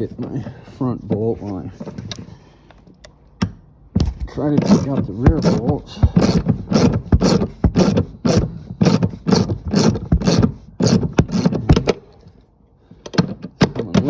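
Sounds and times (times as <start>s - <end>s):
socket ratchet rasping: 3.0s - 12.0s.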